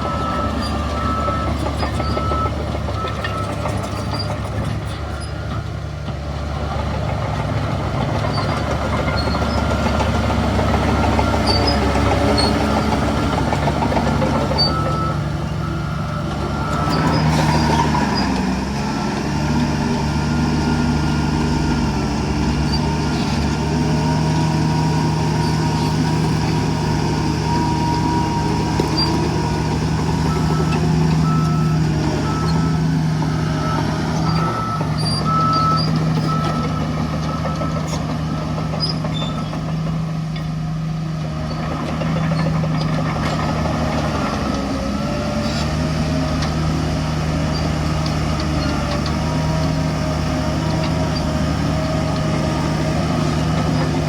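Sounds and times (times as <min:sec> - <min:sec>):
reversing alarm beeps: 0:00.0 - 0:04.4, 0:14.3 - 0:18.2, 0:27.2 - 0:37.9
diesel machinery engine drone: 0:00.0 - 0:54.0.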